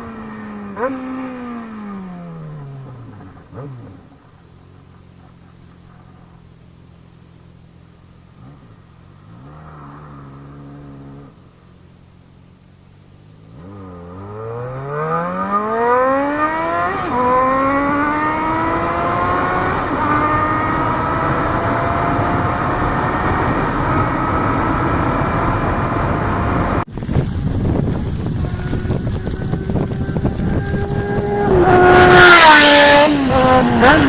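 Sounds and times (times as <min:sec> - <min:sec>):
motorcycle engine accelerating: 0:00.0 - 0:34.0
wind noise: 0:16.9 - 0:34.0.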